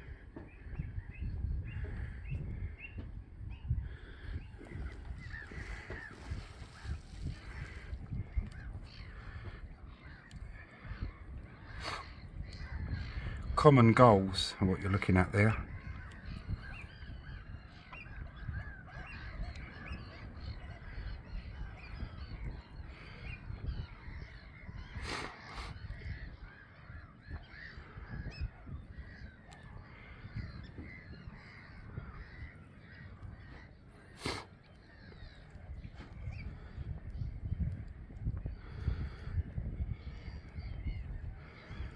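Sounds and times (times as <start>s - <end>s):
gulls calling: 3.7s - 37.0s.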